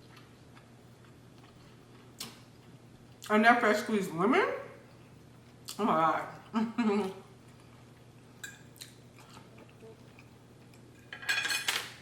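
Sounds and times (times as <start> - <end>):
cutlery clinking on a plate: 11.0 - 12.0.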